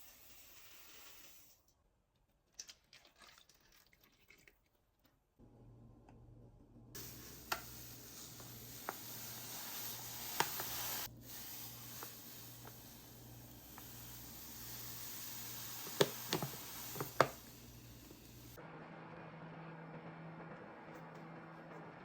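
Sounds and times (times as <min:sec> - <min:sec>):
bright hiss: 0:07.0 - 0:18.6.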